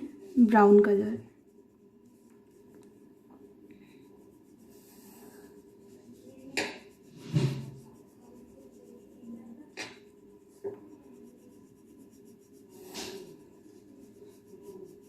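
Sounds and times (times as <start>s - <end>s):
crayon rubbing on paper: 0.0s - 3.1s, 3.7s - 15.0s.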